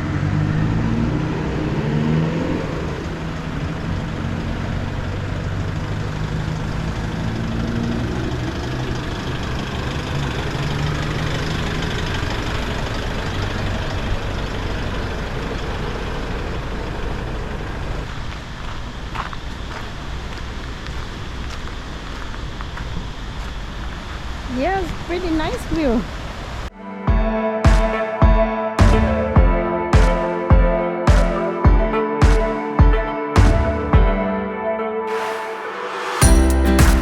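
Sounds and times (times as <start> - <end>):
car engine hum: 0.0 - 24.7
road noise: 0.0 - 26.8, 35.1 - 37.0.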